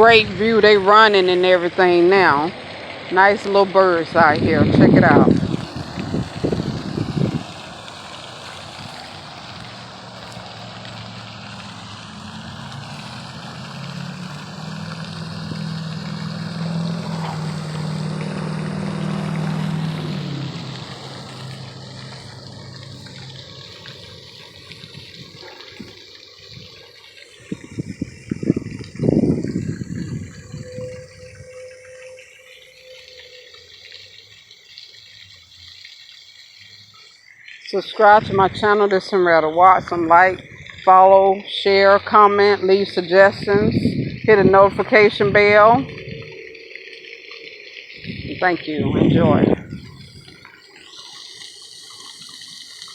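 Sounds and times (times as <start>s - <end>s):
low engine drone: 0.0s - 52.9s
small waterfall splashing: 0.0s - 52.9s
steady rushing hiss: 5.0s - 29.2s.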